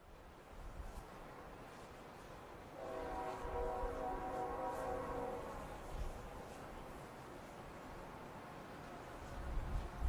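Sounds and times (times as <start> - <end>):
locomotive air horn: 2.8 - 6.0
wind rumbling on microphone: 9.2 - 10.0.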